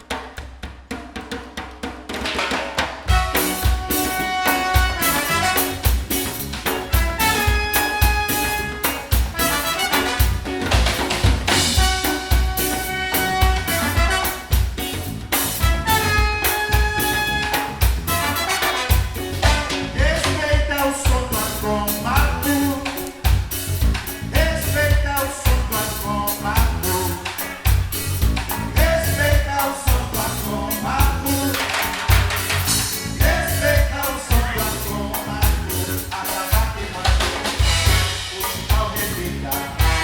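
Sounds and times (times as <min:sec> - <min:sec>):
driving drum beat: 0:00.0 - 0:40.0
live band playing: 0:02.3 - 0:40.0
person singing: 0:19.4 - 0:23.2, 0:24.2 - 0:27.5, 0:28.6 - 0:40.0.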